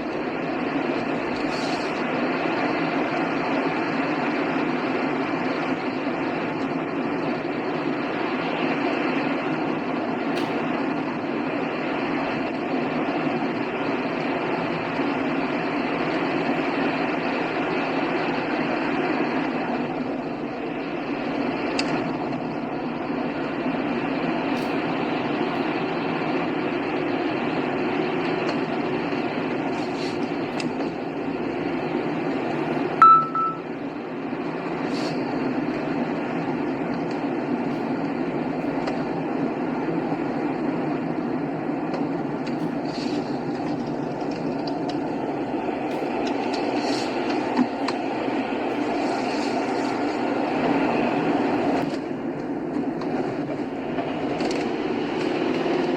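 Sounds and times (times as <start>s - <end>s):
car road and engine noise: 0.0s - 55.9s
short loud beep: 33.0s - 33.6s.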